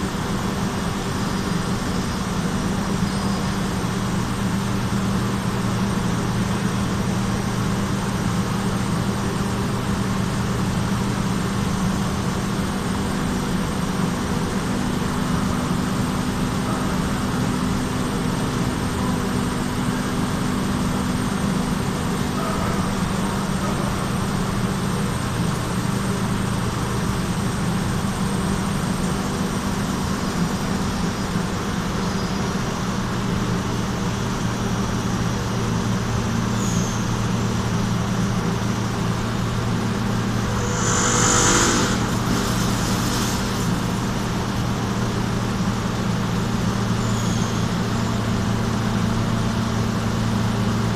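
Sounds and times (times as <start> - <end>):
machine humming: 38.3 - 46.3.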